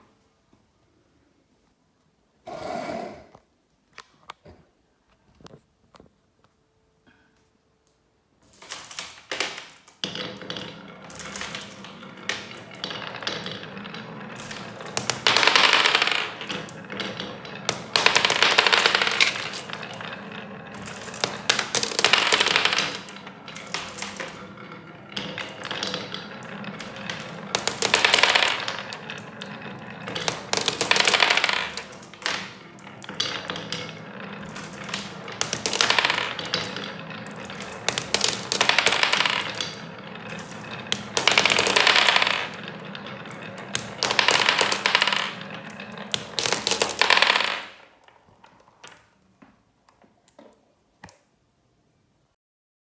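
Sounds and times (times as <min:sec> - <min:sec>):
marbles rolling rush: 0:08.5 - 0:49.0
marbles clicking on track: 0:08.5 - 0:49.1.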